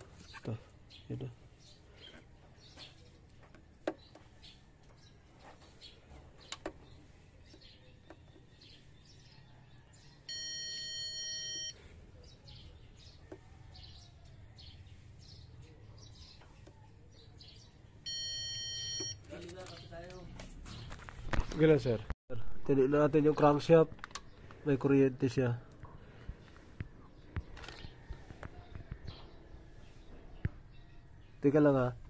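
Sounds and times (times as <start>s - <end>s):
faint bird chirping: 0.0s - 22.1s, 22.7s - 32.0s
loud electronic beep: 18.1s - 19.2s.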